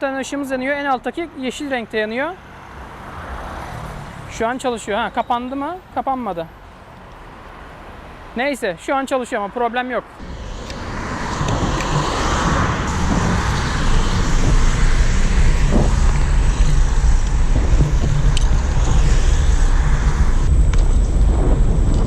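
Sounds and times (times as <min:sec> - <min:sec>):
rushing wind: 0:10.2 - 0:22.0
scooter road noise: 0:10.2 - 0:22.0.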